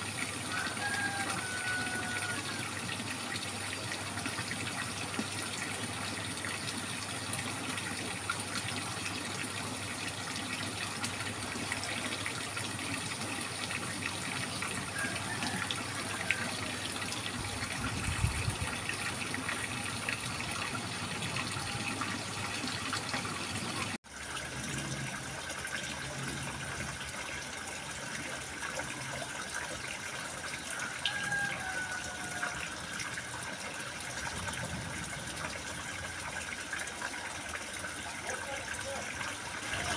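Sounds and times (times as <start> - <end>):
water babbling and splashing: 0.0 - 39.9.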